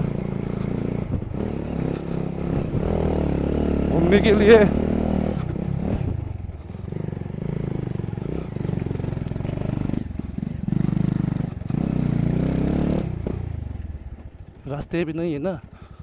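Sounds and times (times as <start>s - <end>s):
motorcycle engine revving: 0.0s - 16.0s.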